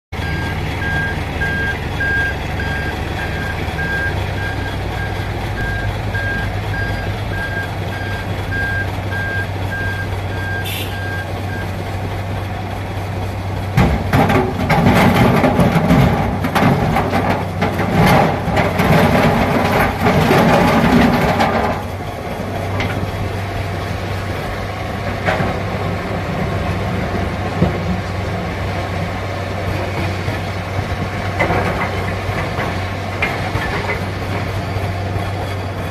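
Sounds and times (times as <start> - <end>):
reversing alarm beeping: 0.2 - 11.8
excavator diesel engine running: 0.2 - 35.9.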